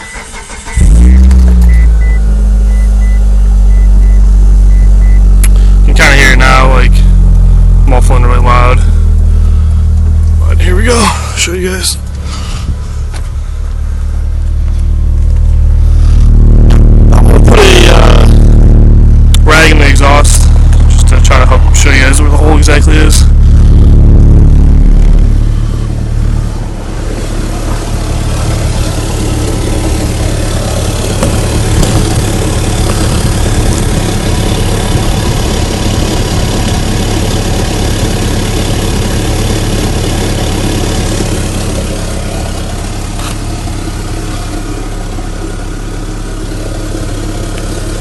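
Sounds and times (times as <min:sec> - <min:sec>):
car engine idling: 0:00.0 - 0:48.0
exhaust leak hissing: 0:23.2 - 0:48.0.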